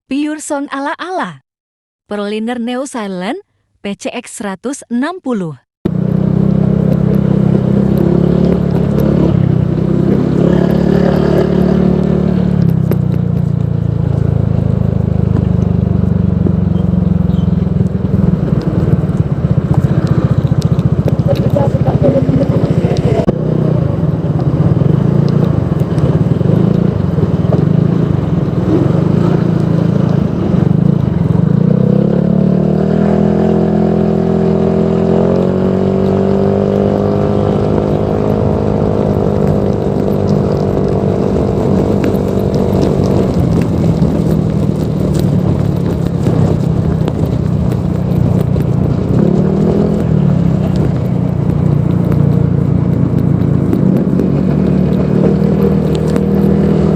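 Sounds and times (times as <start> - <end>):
scooter engine idling and revving: 5.9 - 56.9.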